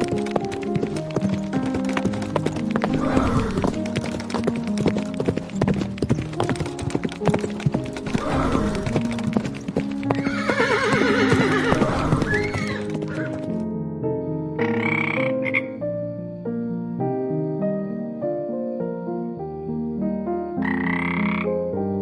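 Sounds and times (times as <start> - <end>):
horse hooves clip-clopping: 0.0 - 13.6
background music with held notes: 0.0 - 22.0
horse whinny: 2.8 - 4.1, 8.0 - 13.5.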